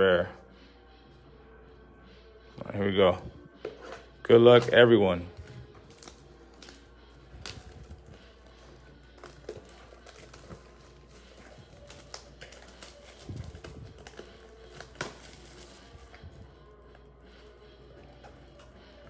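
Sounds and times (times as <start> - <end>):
plastic wrap crinkling and tearing: 5.3 - 17.6.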